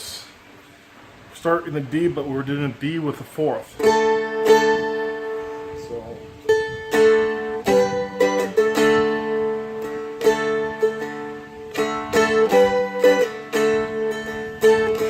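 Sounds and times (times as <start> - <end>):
strummed dulcimer chords: 3.8 - 15.0.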